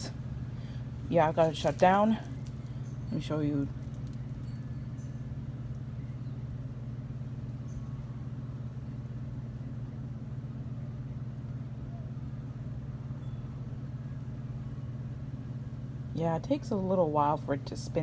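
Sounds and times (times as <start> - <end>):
air conditioner fan humming: 0.0 - 18.0.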